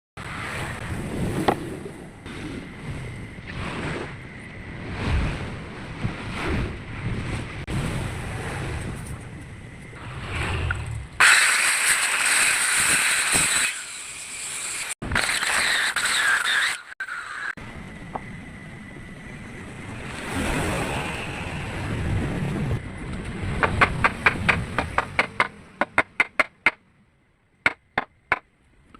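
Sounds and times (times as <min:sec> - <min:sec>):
saw hissing through wood: 0:11.2 - 0:17.6.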